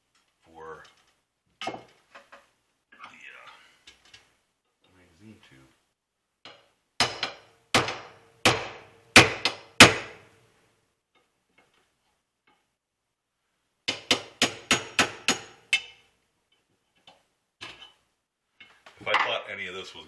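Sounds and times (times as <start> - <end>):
hammer tapping on metal: 7.0 - 10.2, 13.9 - 15.9.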